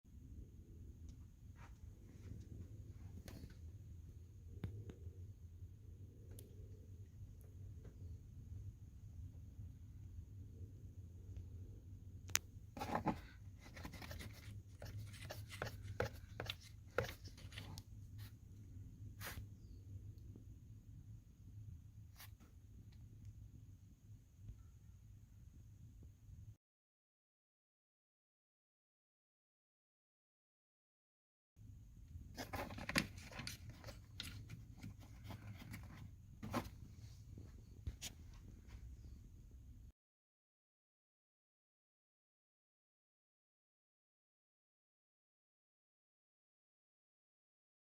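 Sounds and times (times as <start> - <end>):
rubbing and scraping: 12.8 - 18.4
clicks taps and rustles of handling: 32.4 - 36.7.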